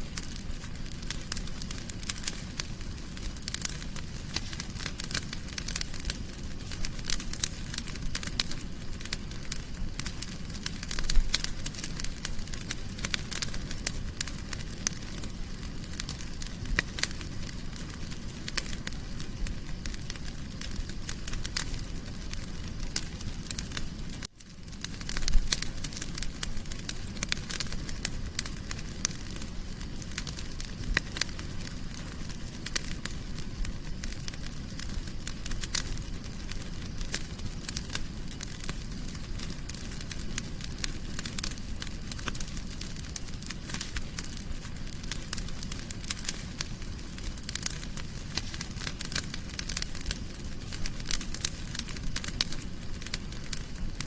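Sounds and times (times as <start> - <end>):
low rumble of flames: 0.0 - 54.0
wood fire crackling and popping: 0.0 - 54.0.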